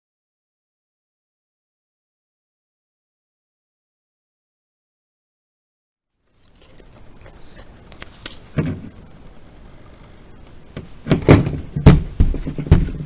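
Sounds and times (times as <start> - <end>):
loud dull thumps: 10.8 - 13.0
knock: 11.1 - 13.0.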